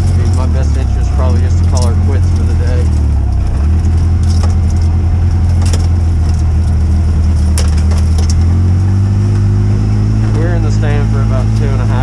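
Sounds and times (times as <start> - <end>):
knocks and rattles: 0.0 - 8.7
vehicle engine running: 0.0 - 12.0.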